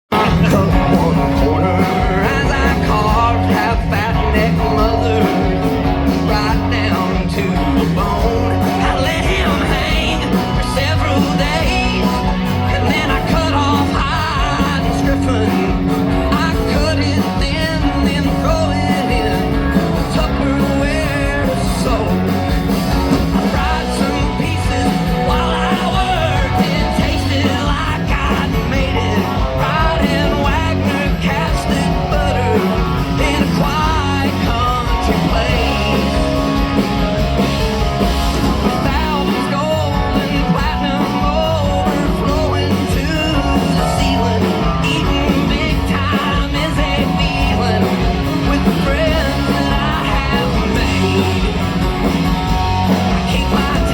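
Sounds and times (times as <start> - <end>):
man singing: 0.0 - 53.9
live band playing country: 0.1 - 53.9.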